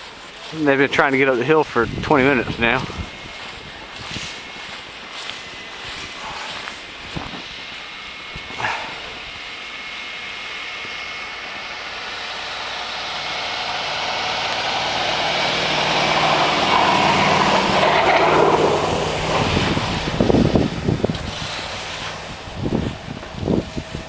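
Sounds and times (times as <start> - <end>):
vehicle engine approaching: 0.0 - 24.0
rushing noise: 12.4 - 24.0.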